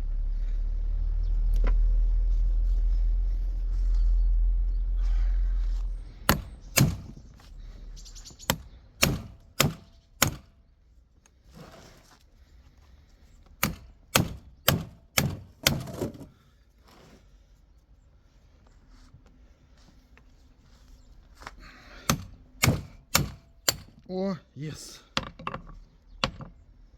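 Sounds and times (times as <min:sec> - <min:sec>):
low rumble: 0:00.0 - 0:08.0
hammer striking metal part: 0:06.3 - 0:07.1, 0:08.5 - 0:10.5, 0:13.6 - 0:15.9, 0:22.1 - 0:23.9.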